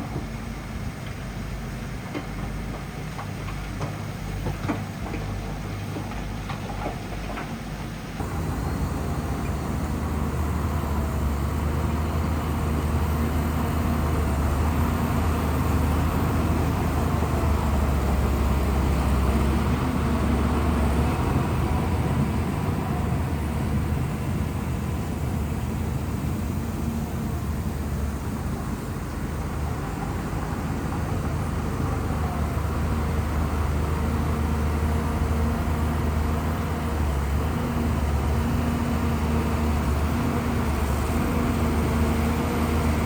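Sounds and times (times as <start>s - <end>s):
bulldozer diesel engine running: 0.0s - 43.0s.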